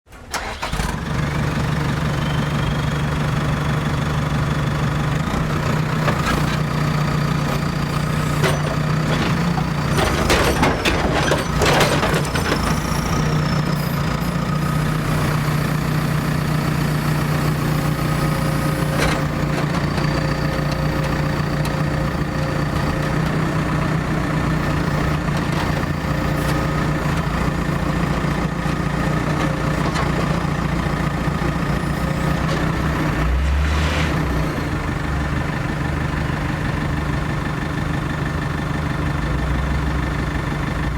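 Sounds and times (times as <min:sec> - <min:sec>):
heavy machinery engine running: 0:00.1 - 0:40.9
clanks and knocks: 0:08.2 - 0:12.9.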